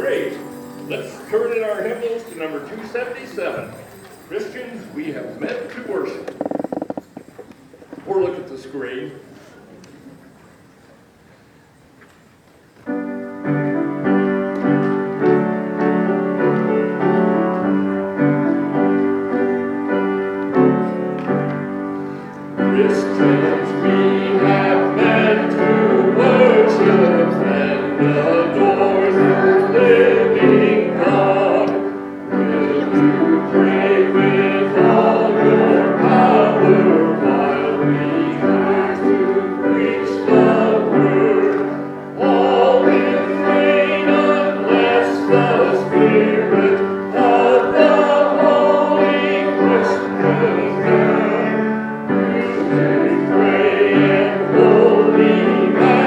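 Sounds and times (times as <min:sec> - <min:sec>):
piano accompaniment: 0:12.8 - 0:56.0
group singing a hymn: 0:22.5 - 0:56.0.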